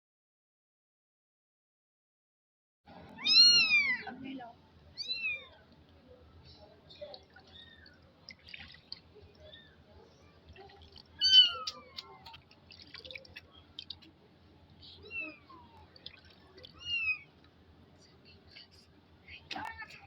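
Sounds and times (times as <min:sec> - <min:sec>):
kitten meowing: 0:03.2 - 0:04.1, 0:05.0 - 0:05.5, 0:11.2 - 0:12.2, 0:15.0 - 0:15.7, 0:16.7 - 0:17.2
water drips and splashes: 0:05.3 - 0:17.7.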